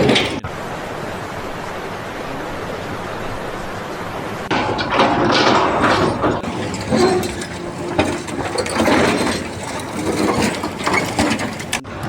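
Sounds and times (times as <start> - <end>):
mechanical clattering and knocking: 0.0 - 0.4, 4.5 - 11.9.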